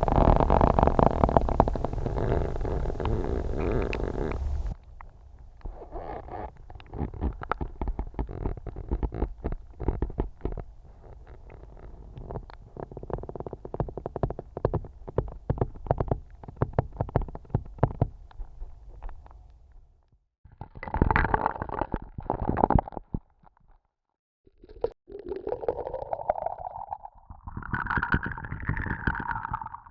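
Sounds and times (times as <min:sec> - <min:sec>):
ice cracking underwater: 0:00.0 - 0:04.8, 0:20.5 - 0:23.6, 0:24.7 - 0:29.9
low underwater rumble: 0:00.0 - 0:04.8.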